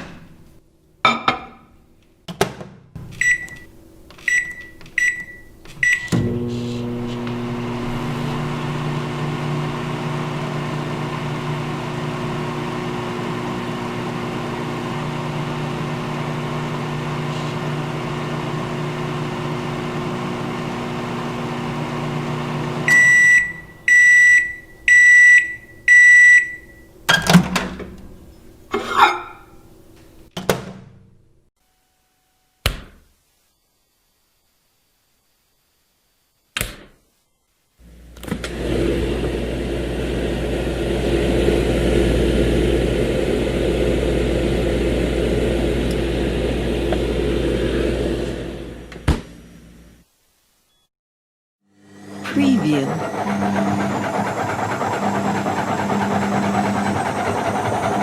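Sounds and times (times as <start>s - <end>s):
microwave humming: 3.0s - 30.4s, 37.8s - 50.0s, 51.8s - 58.0s
keypad beeps: 3.2s - 3.7s, 4.3s - 6.1s
loud microwave end beeps: 3.2s - 3.7s, 4.3s - 6.3s, 22.9s - 26.9s.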